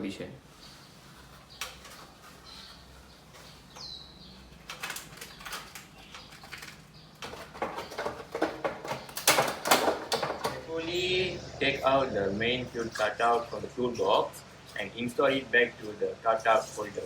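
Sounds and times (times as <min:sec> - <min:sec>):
cover rustling and scraping: 0:00.5 - 0:10.6.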